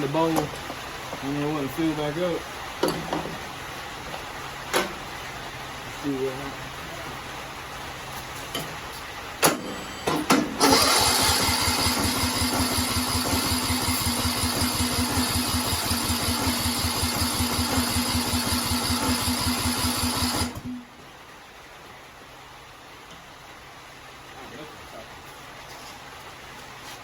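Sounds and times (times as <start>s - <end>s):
engine cranking with starter whine: 9.4s - 21.0s.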